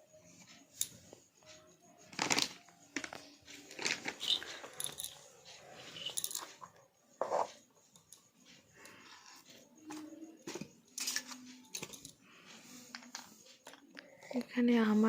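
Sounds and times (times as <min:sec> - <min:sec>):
plastic toys clicking and clattering: 0:02.0 - 0:08.2, 0:09.3 - 0:12.2, 0:12.8 - 0:14.0.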